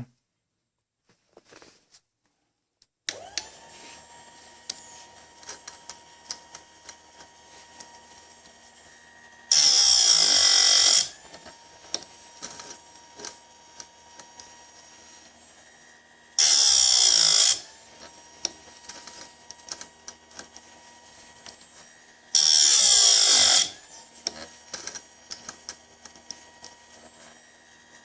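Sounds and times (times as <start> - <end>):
grinding wheel motor whining: 3.1 - 28.0
harsh grinding of chain tooth: 12.4 - 13.4, 21.4 - 27.4.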